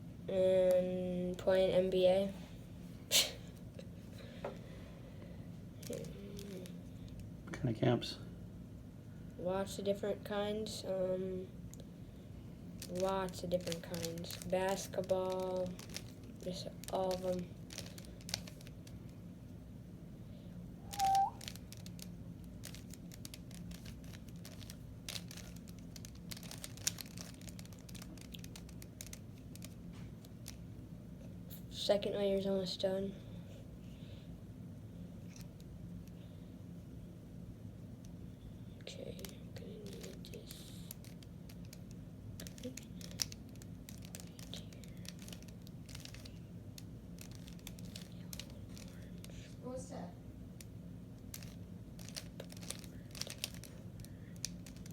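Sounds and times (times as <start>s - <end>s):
plastic cube clicking and rattling: 5.8s - 6.8s, 12.8s - 19.0s, 20.9s - 30.6s, 39.1s - 49.4s, 51.2s - 54.9s
brief high tone: 20.9s - 21.4s.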